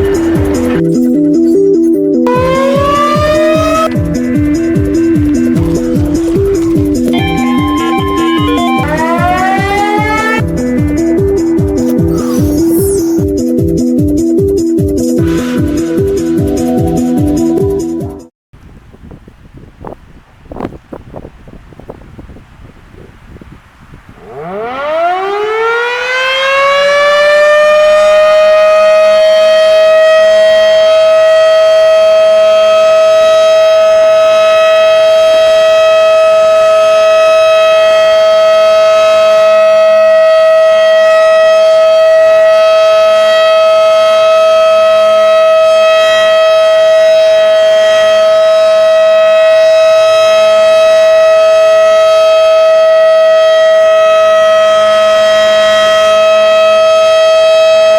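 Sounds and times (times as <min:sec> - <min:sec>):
warning siren winding up: 0:02.3 - 0:10.5, 0:11.8 - 0:13.2, 0:24.2 - 0:57.9.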